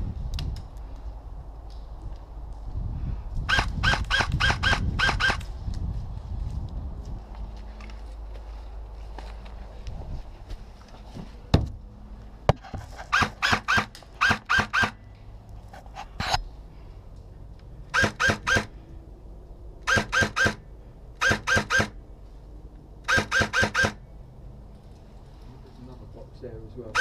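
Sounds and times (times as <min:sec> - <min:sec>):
sharp clicks: 0:03.5 - 0:05.5, 0:17.9 - 0:18.7, 0:19.8 - 0:20.6, 0:21.2 - 0:22.0, 0:23.1 - 0:24.0
airsoft guns firing: 0:17.9 - 0:18.7, 0:19.9 - 0:20.6, 0:21.2 - 0:22.0, 0:23.1 - 0:24.0.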